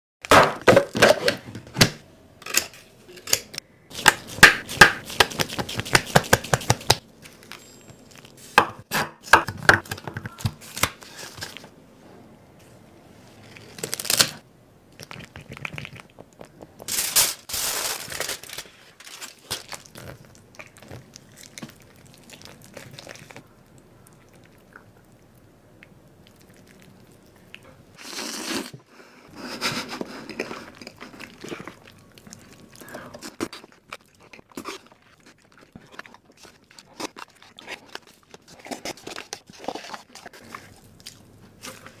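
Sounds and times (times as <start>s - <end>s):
food crunching and rustling: 3.9s - 8.6s, 15.0s - 28.8s, 29.4s - 42.0s.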